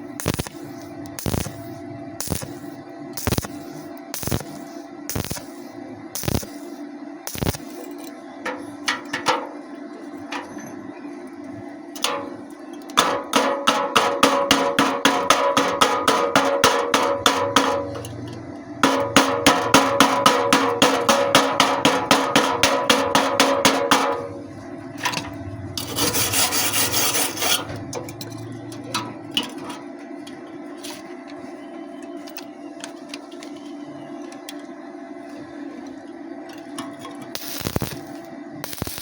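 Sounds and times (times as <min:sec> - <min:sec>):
rapid metal strokes: 0:00.2 - 0:05.6, 0:06.2 - 0:06.7, 0:13.0 - 0:18.0, 0:18.8 - 0:24.3, 0:25.8 - 0:27.8
hissing scrape: 0:25.8 - 0:27.8.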